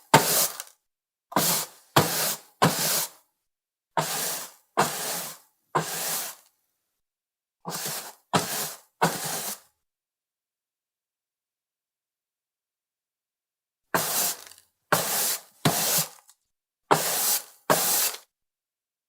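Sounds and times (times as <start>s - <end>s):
mop swishing on wooden floor: 4.0s - 6.4s, 7.7s - 9.6s, 14.0s - 16.2s, 16.9s - 18.2s.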